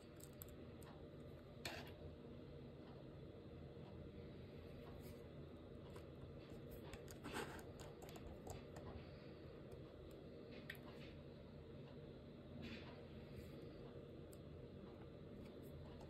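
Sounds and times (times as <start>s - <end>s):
low background hum: 0.0s - 16.0s.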